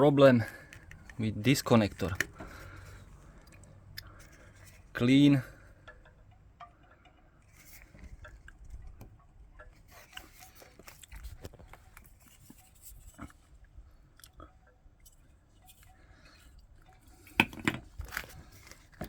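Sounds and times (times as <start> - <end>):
hands clicking and scraping connector: 0.0 - 19.0.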